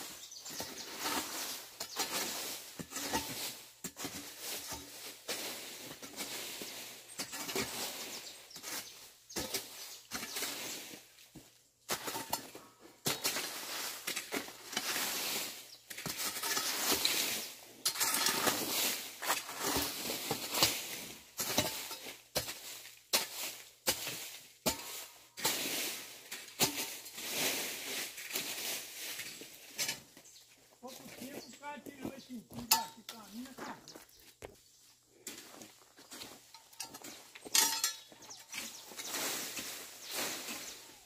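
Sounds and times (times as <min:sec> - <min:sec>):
hoe scraping through soil: 0:00.0 - 0:30.4, 0:35.1 - 0:41.0.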